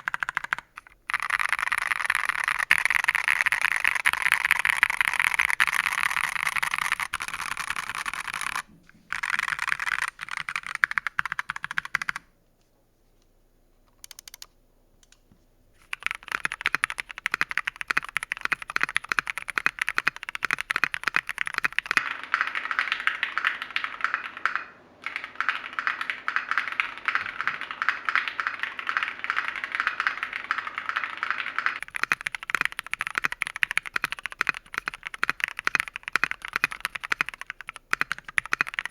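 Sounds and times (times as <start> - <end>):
mechanical keyboard key clacks: 13.9 - 15.2, 15.8 - 22.1, 31.8 - 38.9.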